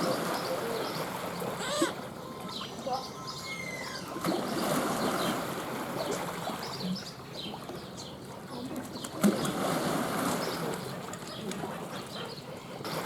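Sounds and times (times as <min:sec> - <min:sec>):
water splashing and rushing: 0:00.0 - 0:02.3, 0:04.0 - 0:12.2.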